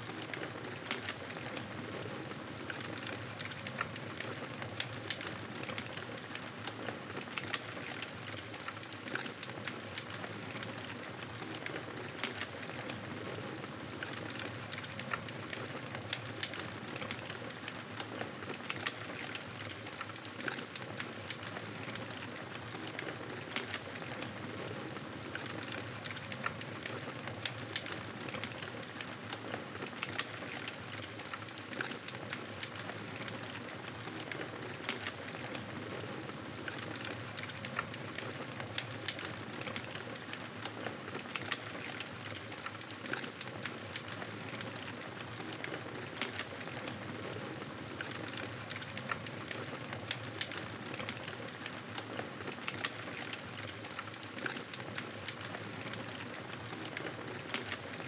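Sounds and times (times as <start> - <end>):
campfire crackling: 30.0 - 58.0.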